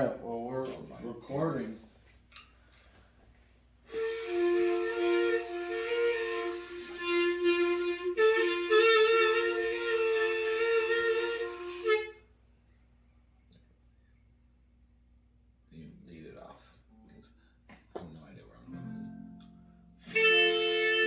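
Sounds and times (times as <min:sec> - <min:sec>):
instrument holding chords: 0:18.7 - 0:21.0.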